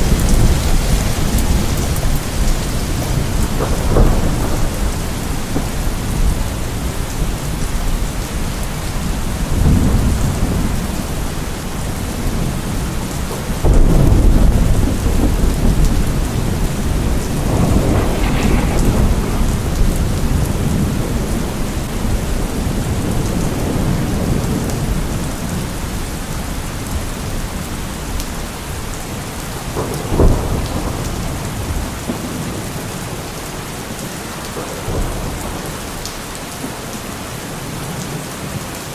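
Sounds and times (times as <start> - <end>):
steady rain falling: 0.0 - 38.9
sharp thunder clap: 0.1 - 6.8, 13.6 - 24.6
rolls of thunder: 13.6 - 24.6.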